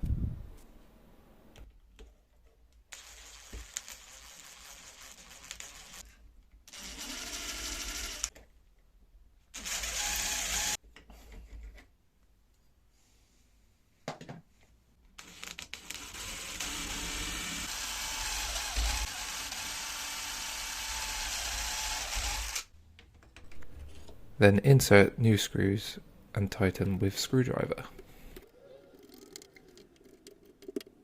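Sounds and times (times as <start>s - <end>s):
power drill drilling: 6.7s - 8.3s, 9.6s - 10.8s, 15.8s - 22.7s.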